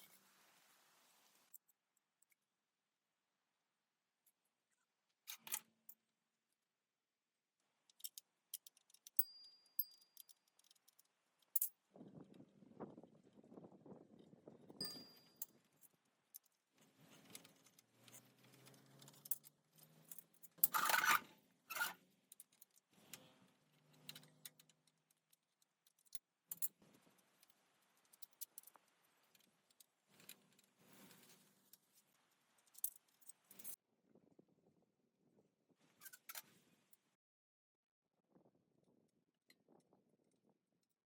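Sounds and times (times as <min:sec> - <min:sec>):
metal tools clinking and knocking: 0:14.8 - 0:22.8.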